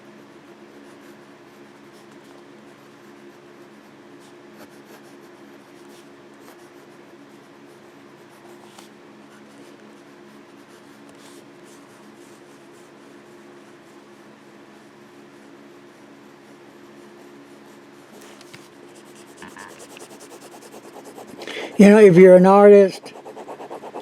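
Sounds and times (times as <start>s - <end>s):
pen scratching on paper: 18.9s - 24.0s.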